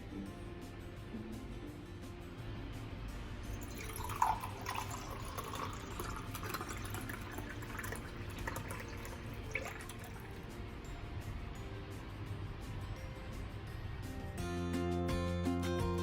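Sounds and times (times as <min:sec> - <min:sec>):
water running and splashing: 0:03.6 - 0:10.3
water dripping: 0:03.6 - 0:10.4.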